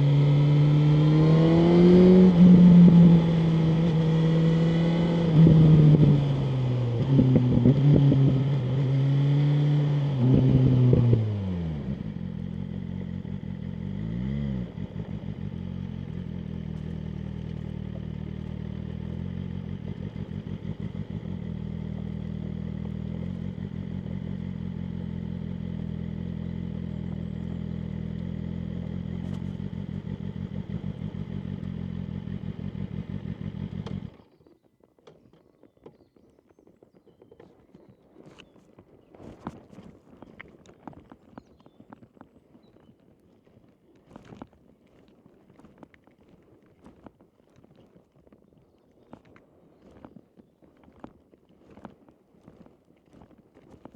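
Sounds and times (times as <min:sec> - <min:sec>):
motorcycle engine revving and idling: 0:00.0 - 0:34.2.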